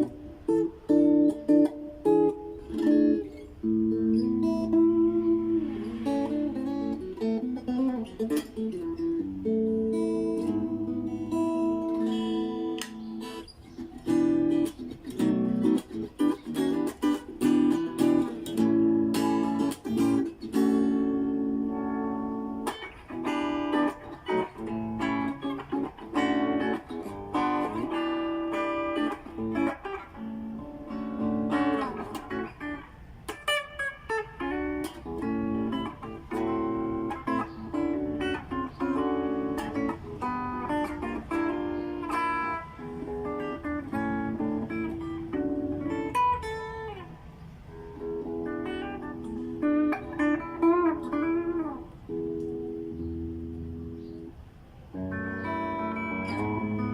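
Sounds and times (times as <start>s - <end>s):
electric guitar playing: 0.0s - 56.9s.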